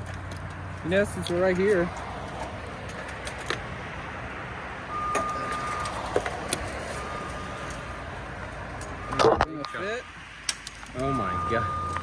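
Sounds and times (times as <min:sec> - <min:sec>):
electronic beep: 0:04.9 - 0:06.1, 0:11.0 - 0:12.0.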